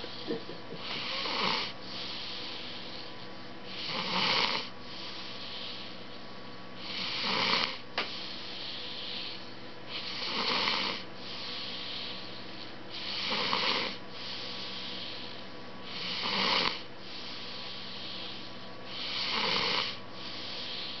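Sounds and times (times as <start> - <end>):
person snoring: 0.0 - 1.7, 3.7 - 4.7, 6.8 - 7.8, 10.0 - 11.5, 13.0 - 14.0, 15.9 - 16.9, 18.9 - 21.0
soft breathing: 0.0 - 21.0.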